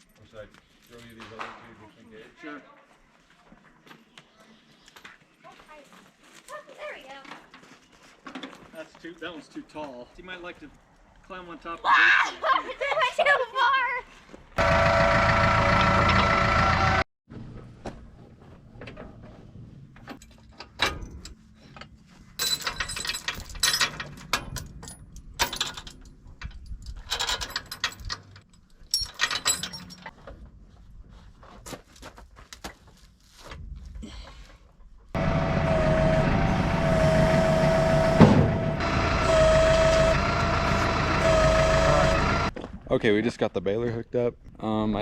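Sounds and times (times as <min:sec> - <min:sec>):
tractor engine running: 0:14.6 - 0:17.0, 0:35.2 - 0:42.5
metal clinks and rattles: 0:20.0 - 0:30.2.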